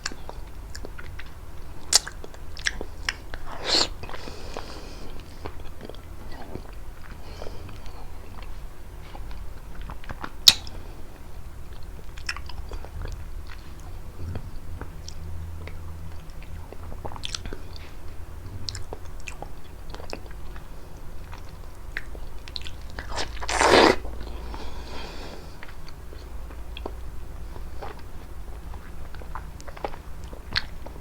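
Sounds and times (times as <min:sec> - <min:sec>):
fruit being bitten and chewed: 0:00.0 - 0:10.8, 0:11.7 - 0:17.9, 0:21.2 - 0:24.9.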